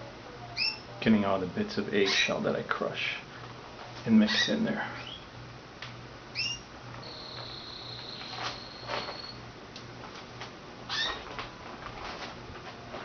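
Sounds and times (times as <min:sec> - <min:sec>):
canary chirps: 0:00.5 - 0:00.9, 0:02.0 - 0:02.4, 0:04.3 - 0:05.3, 0:06.3 - 0:09.4, 0:10.9 - 0:11.2
canary whistled note: 0:06.4 - 0:09.4.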